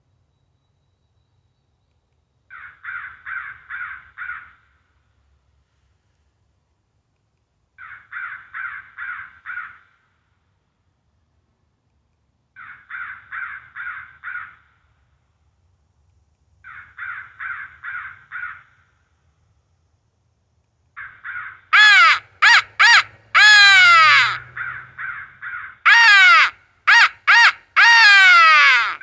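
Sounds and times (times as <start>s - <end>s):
recorded crow caws: 2.5s - 4.9s, 7.8s - 10.3s, 12.6s - 14.9s, 16.6s - 19.0s, 21.0s - 29.0s.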